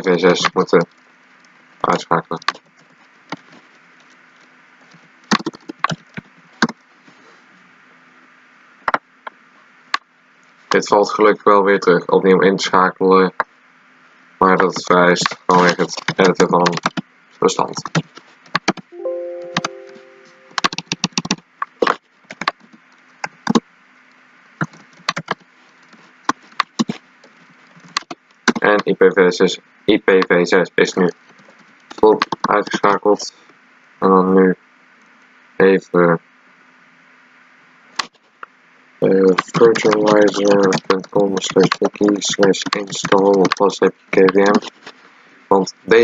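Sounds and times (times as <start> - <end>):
faint steady hum: 0.0 - 46.0
computer keyboard typing: 5.3 - 6.8, 15.2 - 17.0, 17.7 - 23.6, 24.6 - 25.4, 39.3 - 44.7.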